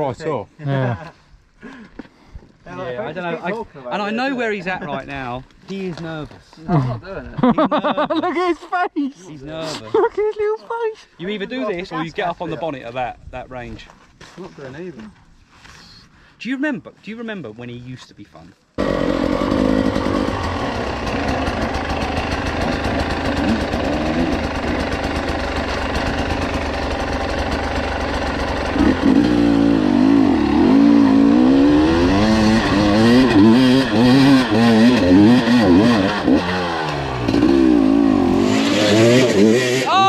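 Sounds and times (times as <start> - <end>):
dirt bike engine revving: 18.8 - 40.0.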